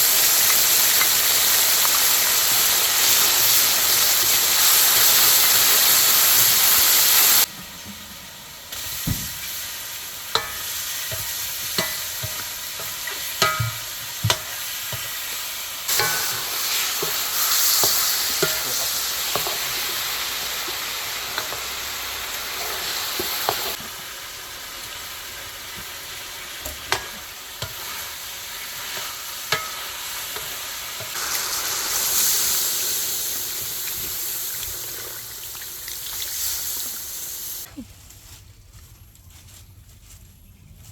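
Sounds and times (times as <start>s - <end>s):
food sizzling in a pan: 0.0s - 37.8s
loud hiss: 29.9s - 37.7s.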